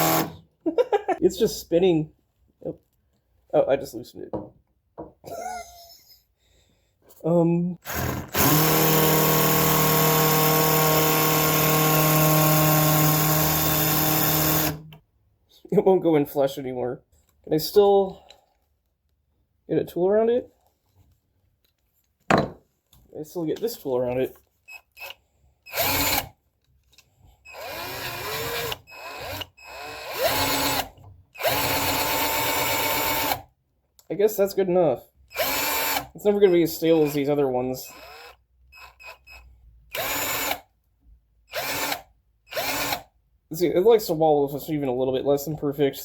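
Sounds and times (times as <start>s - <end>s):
electric drill running: 0.0s - 0.4s, 7.9s - 14.8s, 27.5s - 33.4s.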